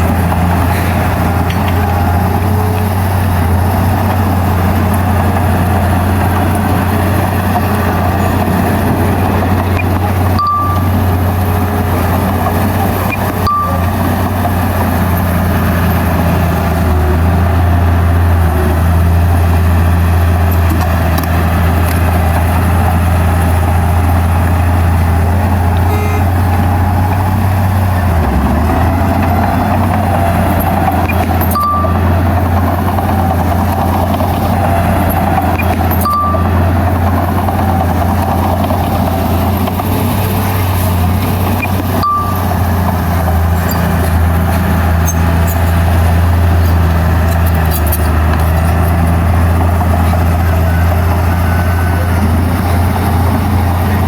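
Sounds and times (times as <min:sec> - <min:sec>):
diesel machinery engine drone: 0:00.0 - 0:54.0
short high beeps: 0:09.8 - 0:11.1, 0:13.0 - 0:14.1, 0:25.7 - 0:26.4, 0:31.0 - 0:32.1, 0:35.5 - 0:36.6, 0:41.6 - 0:42.6.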